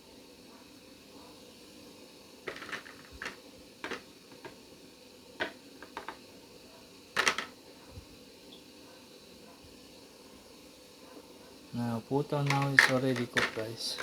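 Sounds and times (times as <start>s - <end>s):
kitchenware clicks and knocks: 2.5s - 4.5s, 5.4s - 6.2s, 7.2s - 7.5s, 12.5s - 14.0s.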